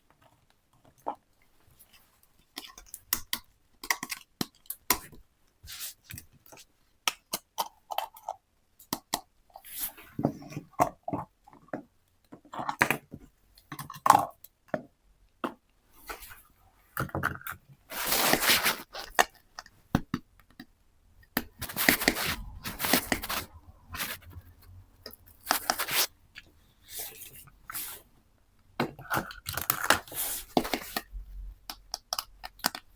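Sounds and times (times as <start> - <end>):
packaging rustling: 17.9 - 19.3, 21.6 - 24.4, 25.4 - 26.1.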